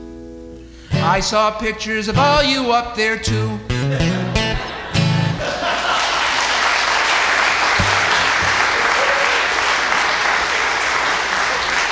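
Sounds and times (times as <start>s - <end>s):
congregation applauding: 4.6s - 11.9s.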